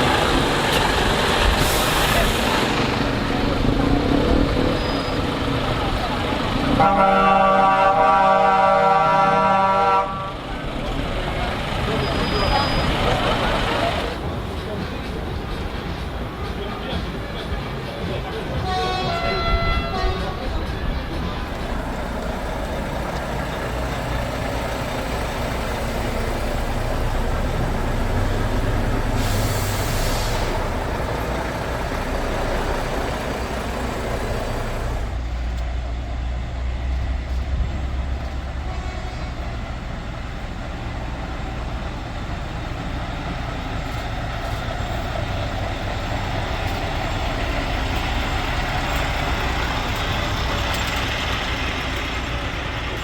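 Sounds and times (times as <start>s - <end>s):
truck diesel engines running: 0.0s - 53.0s
air brake hiss: 1.5s - 2.7s, 29.1s - 30.8s.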